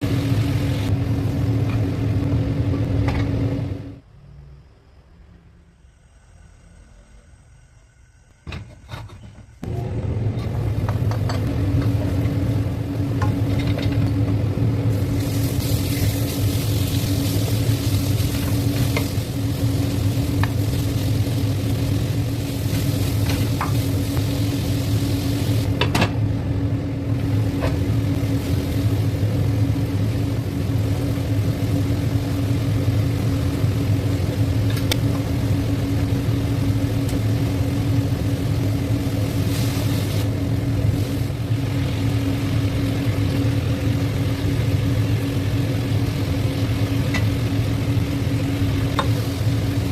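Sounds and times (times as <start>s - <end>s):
steady low hum: 0.0s - 49.9s
vegetables sizzling in a pan: 10.7s - 25.8s, 27.1s - 49.9s.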